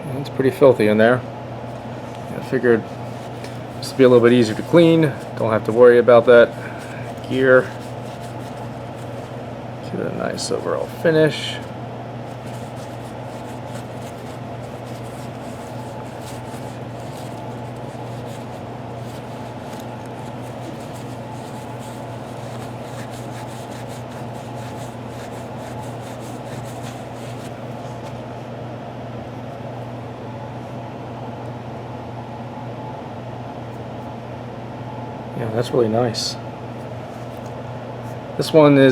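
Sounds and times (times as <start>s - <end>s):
steady machine hum: 0.0s - 38.9s
faint scratching and ticking: 2.9s - 9.4s, 12.3s - 28.2s.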